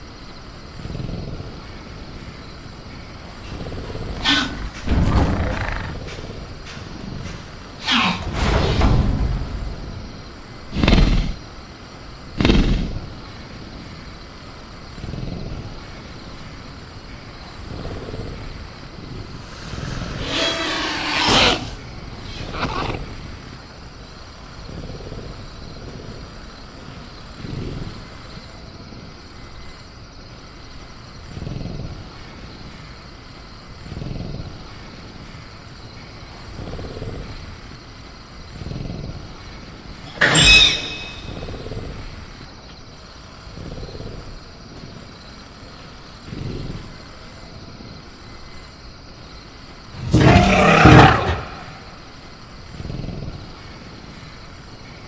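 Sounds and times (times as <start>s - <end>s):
crickets chirping: 0.0s - 55.0s
low animal grunts: 3.2s - 8.8s, 50.0s - 52.0s
cage rattling bangs: 4.2s - 10.2s, 40.1s - 41.5s
creature screeching call: 20.0s - 23.0s, 40.1s - 41.5s, 50.0s - 51.9s.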